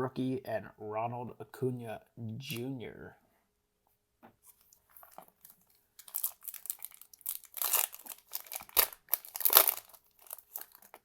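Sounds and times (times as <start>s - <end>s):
card pack wrapper crinkling: 4.7s - 11.0s.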